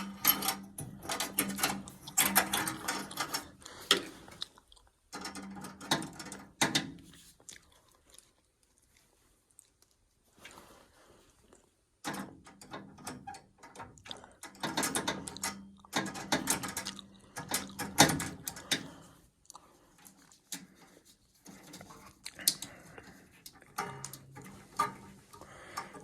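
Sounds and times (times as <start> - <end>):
hand tools clicking and rattling: 0.0 - 4.3, 5.1 - 6.9, 12.0 - 19.1, 20.1 - 26.0.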